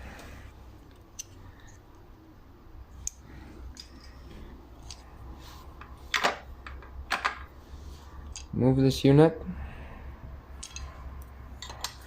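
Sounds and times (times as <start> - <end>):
metal parts clicking and tapping: 10.6 - 10.9, 11.6 - 12.0.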